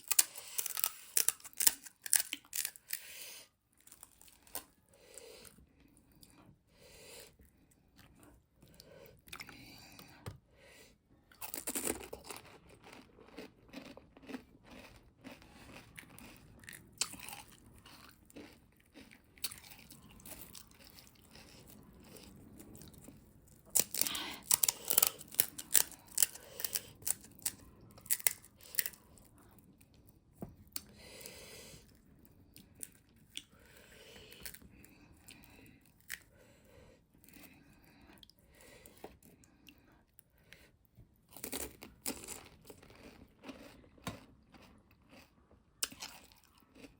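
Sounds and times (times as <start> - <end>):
person crunching crisp snacks: 0.0 - 3.1, 3.7 - 4.8, 11.3 - 29.5, 41.3 - 46.9.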